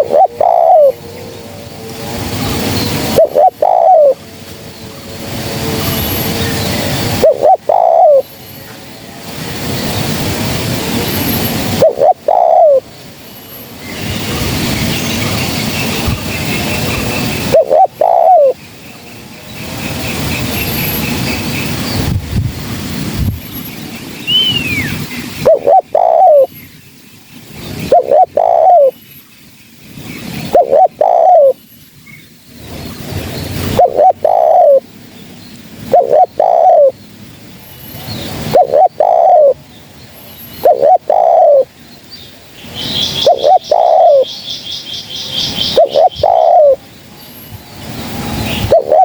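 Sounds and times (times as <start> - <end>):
dove cooing: 0.0 - 1.0, 2.4 - 4.2, 7.1 - 8.3, 11.7 - 12.8, 17.1 - 18.6, 25.4 - 26.5, 27.8 - 29.0, 30.4 - 31.6, 33.7 - 34.9, 35.8 - 37.0, 38.4 - 39.6, 40.6 - 41.7, 42.9 - 44.3, 45.6 - 46.8, 48.5 - 49.0.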